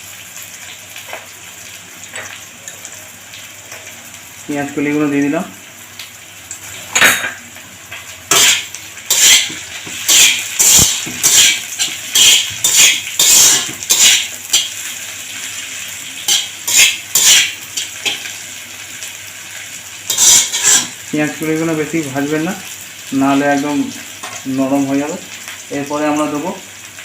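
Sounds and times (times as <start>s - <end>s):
metal utensil scraping a pan: 8.3s - 14.8s, 16.2s - 18.3s, 20.1s - 21.0s.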